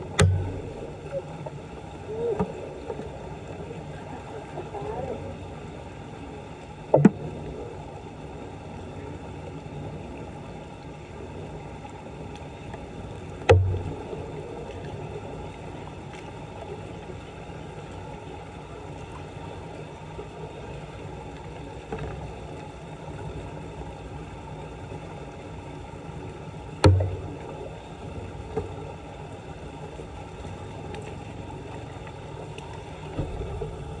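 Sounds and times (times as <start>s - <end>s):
floodwater around street drain: 0.0s - 34.0s
sharp knocks with dull thud: 0.2s - 0.9s, 13.5s - 14.0s, 26.8s - 27.4s.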